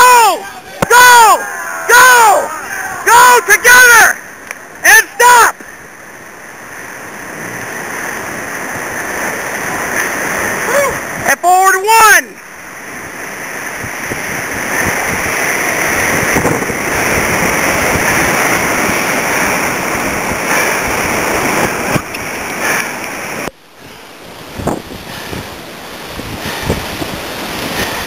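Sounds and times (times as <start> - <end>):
whitewater rapids rushing: 0.0 - 28.0
wind on microphone: 12.8 - 28.0.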